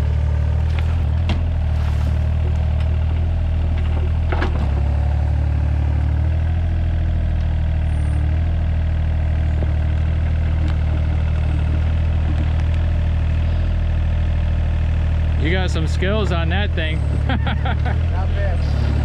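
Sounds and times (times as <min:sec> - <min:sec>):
excavator diesel engine running: 0:00.0 - 0:19.0.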